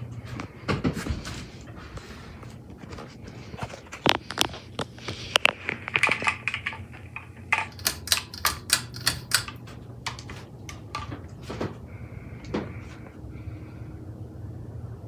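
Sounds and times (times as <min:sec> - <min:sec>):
low steady hum: 0:00.0 - 0:15.0
sharp clicks and taps: 0:07.6 - 0:11.1.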